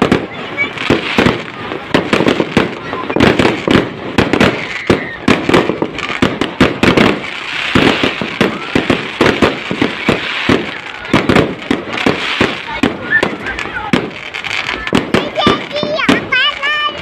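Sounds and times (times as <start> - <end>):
fireworks bangs: 0.0 - 17.0.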